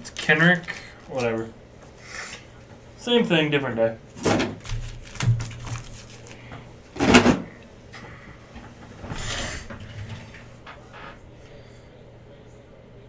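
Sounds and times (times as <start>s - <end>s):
trading cards rustling: 4.8s - 6.5s.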